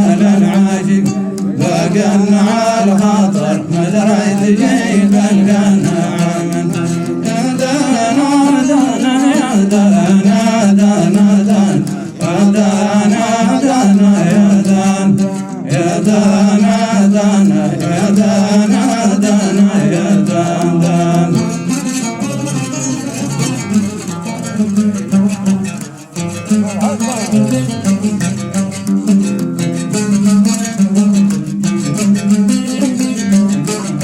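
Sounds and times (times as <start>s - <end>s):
men singing: 0.0s - 34.0s
plucked string instrument: 0.0s - 34.0s.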